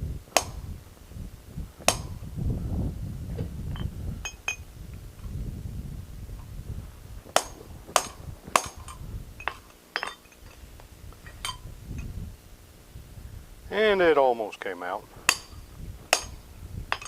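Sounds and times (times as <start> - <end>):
low rumble: 0.0 - 9.5.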